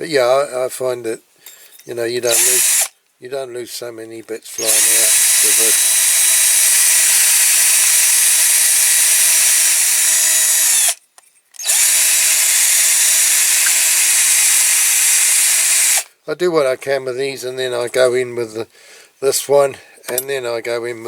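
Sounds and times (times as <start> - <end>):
drill motor whine: 2.3 - 2.9, 4.6 - 11.0, 11.6 - 16.1.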